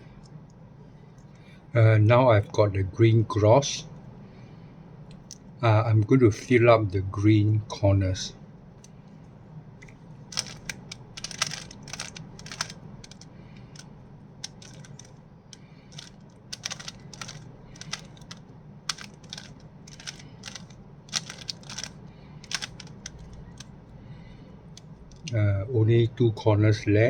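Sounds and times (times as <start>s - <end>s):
faint low hum: 0.0s - 27.0s
plastic puzzle cube clicking: 10.3s - 15.1s, 15.9s - 23.7s.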